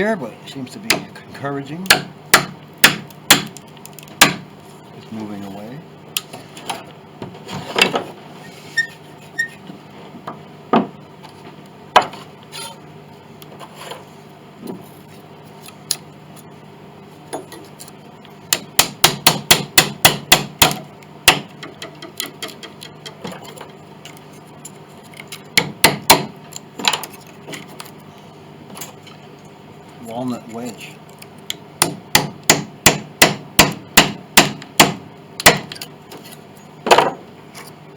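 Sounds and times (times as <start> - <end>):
hammer tapping wooden wedges: 0.8 - 1.2, 1.9 - 3.6, 4.2 - 4.4, 18.5 - 23.4, 25.6 - 27.0, 31.8 - 35.8.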